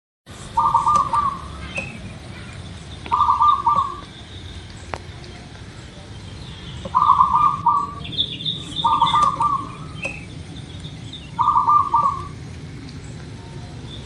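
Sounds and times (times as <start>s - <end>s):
dove cooing: 0.6s - 2.5s, 3.1s - 4.1s, 6.9s - 10.2s, 11.4s - 12.4s.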